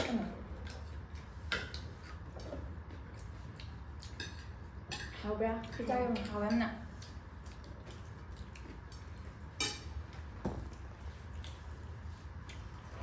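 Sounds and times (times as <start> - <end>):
low room hum: 0.0 - 13.0
cutlery clinking against plates: 4.0 - 6.6, 9.6 - 10.0.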